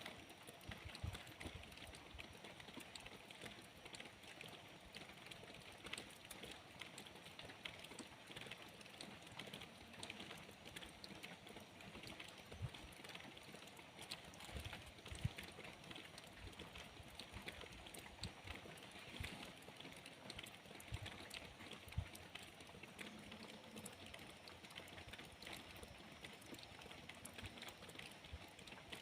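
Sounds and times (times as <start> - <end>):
light rain pattering: 0.0 - 29.0.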